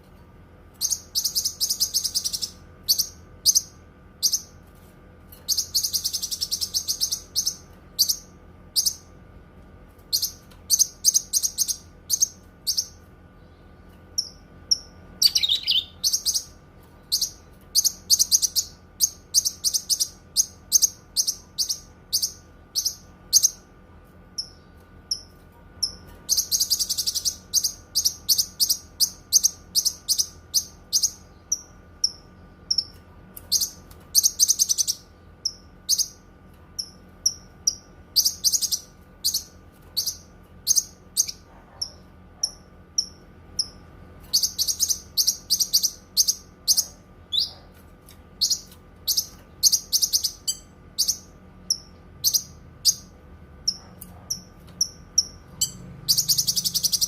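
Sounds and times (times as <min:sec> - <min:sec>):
faint steady hum: 0:00.0 - 0:57.0
songbird chirping and trilling: 0:00.7 - 0:04.6, 0:05.4 - 0:09.2, 0:10.0 - 0:23.7, 0:24.3 - 0:47.8, 0:48.4 - 0:57.0.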